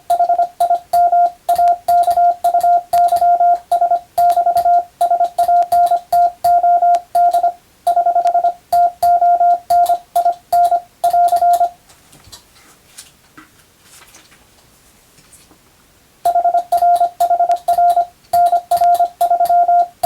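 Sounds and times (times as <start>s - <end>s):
morse code beeps: 0.0s - 11.8s, 16.3s - 20.0s
telegraph key clicks: 0.1s - 7.5s, 16.3s - 20.0s.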